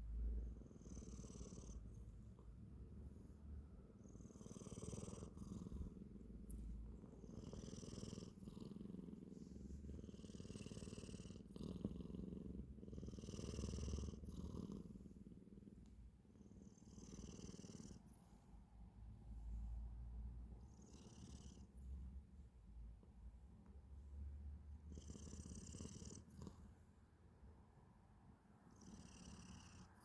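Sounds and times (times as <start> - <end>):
cat purring: 0.0 - 27.6, 28.2 - 30.0
cat snoring: 0.1 - 2.9, 3.8 - 15.7, 16.4 - 18.3, 20.6 - 22.0, 24.8 - 26.8, 28.7 - 30.0.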